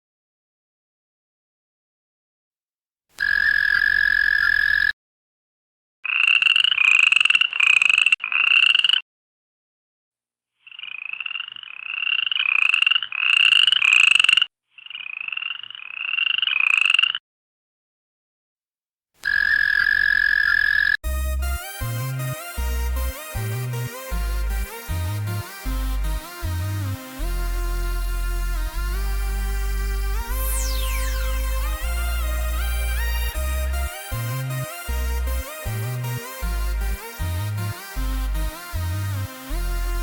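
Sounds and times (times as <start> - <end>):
toad croaks: 3.2 - 4.9, 6.0 - 9.0, 10.6 - 17.2, 19.2 - 21.0
toad trilling: 3.2 - 4.9, 6.0 - 9.0, 10.6 - 17.2, 19.2 - 21.0.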